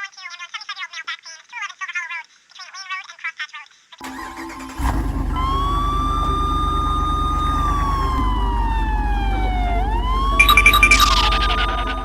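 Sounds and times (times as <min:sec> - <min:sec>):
low vehicle engine rumble: 0:04.8 - 0:10.4
police siren wailing: 0:04.8 - 0:12.0.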